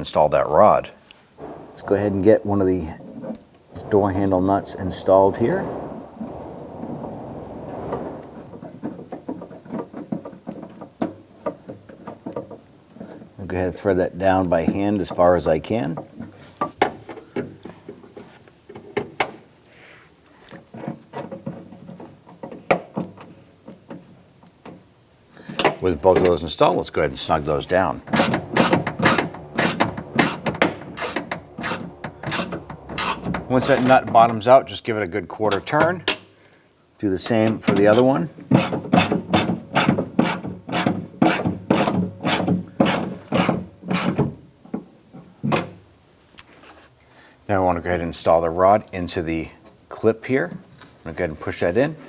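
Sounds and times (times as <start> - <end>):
hand ratchet rasping: 28.1 - 33.8, 38.5 - 44.2.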